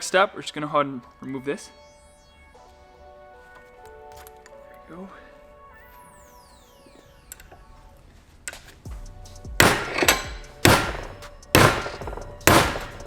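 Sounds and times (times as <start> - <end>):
hammer striking metal: 9.6 - 13.0.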